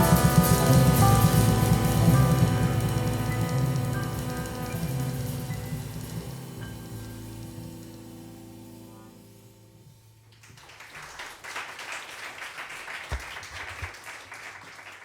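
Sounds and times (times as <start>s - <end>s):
jazz quartet chord ringing: 0.0s - 10.2s
audience applause: 10.4s - 15.0s.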